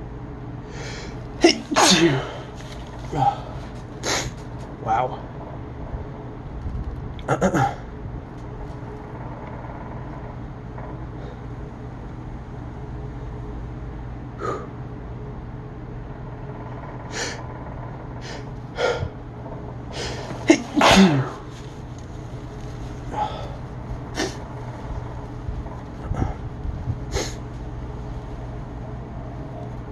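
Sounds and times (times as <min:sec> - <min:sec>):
steady low hum: 0:00.0 - 0:29.9
sharp breaths: 0:00.7 - 0:01.2
person sneezing: 0:01.4 - 0:02.5, 0:20.0 - 0:21.5, 0:24.2 - 0:24.4.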